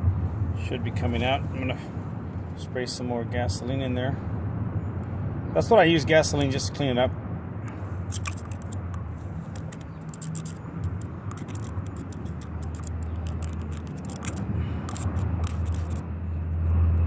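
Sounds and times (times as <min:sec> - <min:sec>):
steady low rumble: 0:00.0 - 0:05.5, 0:06.2 - 0:17.0
small metal parts clicking and scraping: 0:08.0 - 0:16.1.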